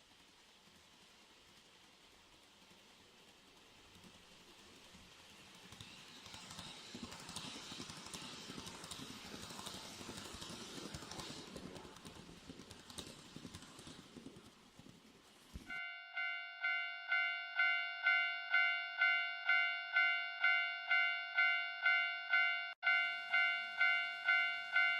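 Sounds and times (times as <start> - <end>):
model train wheels clicking: 0.0 - 15.8.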